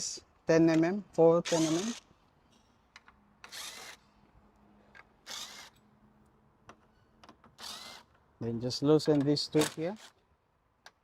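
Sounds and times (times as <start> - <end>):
cordless power driver spinning: 1.5 - 2.0
tool and bolt clicks: 9.0 - 10.1.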